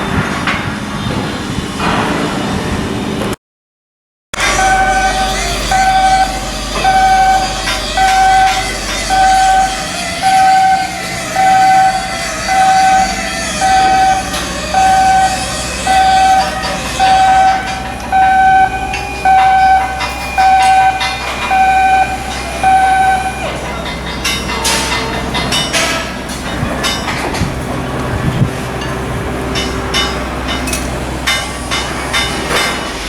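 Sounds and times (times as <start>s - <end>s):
steady background noise: 0.0s - 3.4s, 4.4s - 33.0s
electronic alarm beeping: 4.4s - 23.5s.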